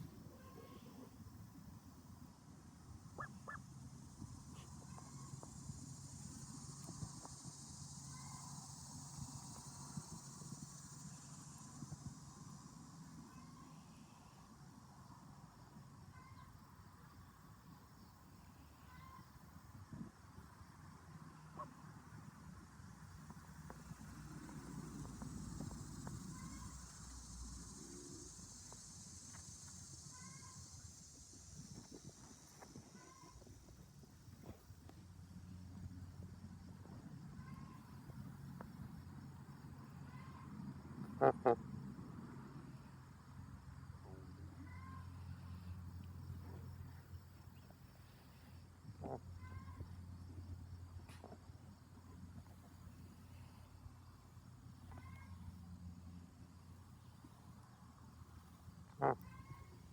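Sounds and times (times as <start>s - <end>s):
goose peeping: 3.1s - 3.6s.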